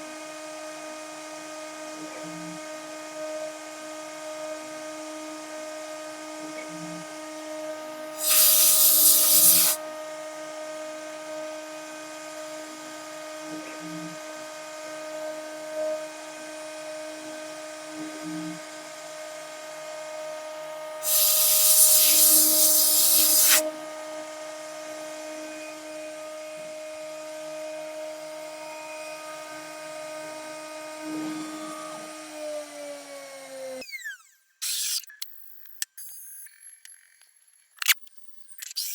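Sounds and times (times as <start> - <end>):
router spindle running: 8.2 - 9.8, 17.4 - 33.8
spindle winding down: 21.0 - 23.7.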